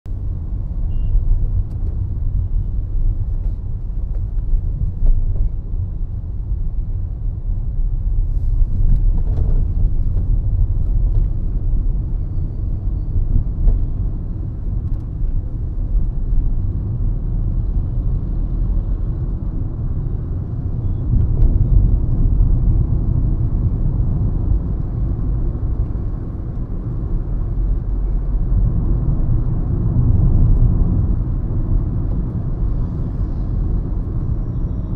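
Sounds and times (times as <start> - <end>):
car engine rumble inside cabin: 0.0 - 34.9
tyre road noise: 0.1 - 34.9.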